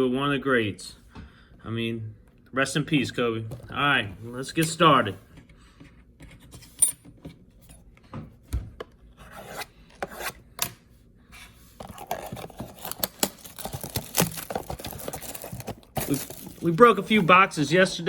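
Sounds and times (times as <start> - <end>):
cardboard and plastic wrap scraping: 11.5 - 17.5.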